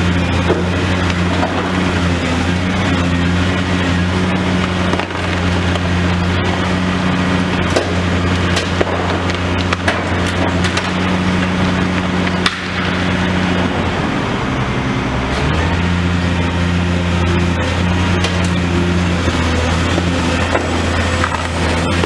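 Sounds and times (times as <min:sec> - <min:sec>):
debris cracking and knocking: 0:00.0 - 0:14.3
excavator diesel engine running: 0:00.0 - 0:22.0.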